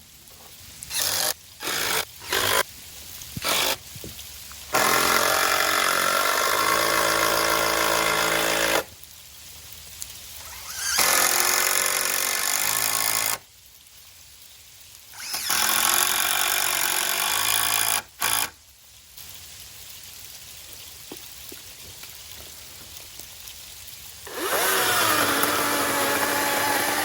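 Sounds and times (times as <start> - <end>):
handheld power tool running: 0.9 - 2.6, 24.3 - 27.0.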